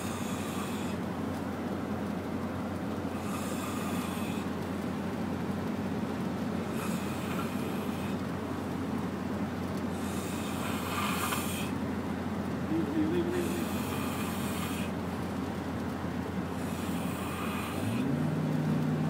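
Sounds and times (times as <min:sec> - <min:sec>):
steady low hum: 0:00.0 - 0:19.0
person snoring: 0:06.8 - 0:08.2, 0:10.0 - 0:11.7, 0:13.3 - 0:14.9.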